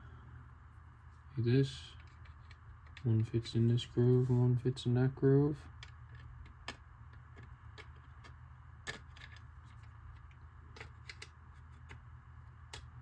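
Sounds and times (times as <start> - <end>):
steady low hum: 0.0 - 13.0
plastic parts clicking and tapping: 1.9 - 3.5, 5.7 - 12.0, 12.7 - 13.0.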